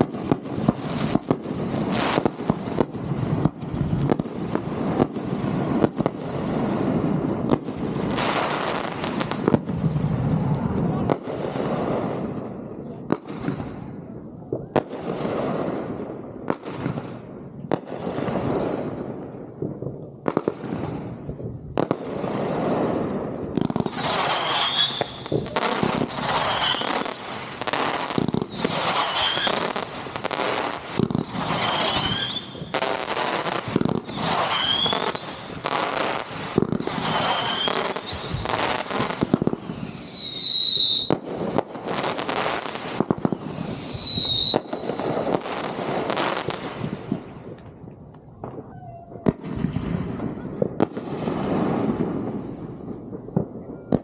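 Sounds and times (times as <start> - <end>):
fireworks bangs: 0.0 - 54.0
firework whistle: 23.8 - 41.2, 42.0 - 45.5.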